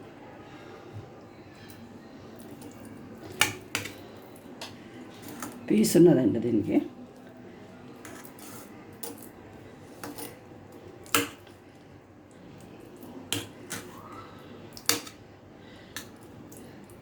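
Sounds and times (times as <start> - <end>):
utensils clinking against a dish: 8.0 - 10.4.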